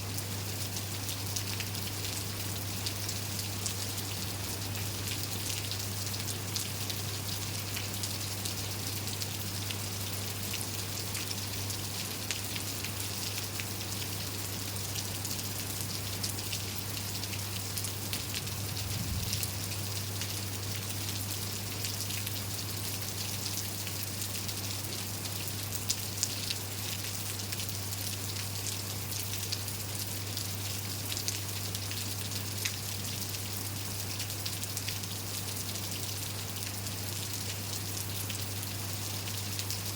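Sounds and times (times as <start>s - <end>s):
rain drops pattering: 0.1s - 39.9s.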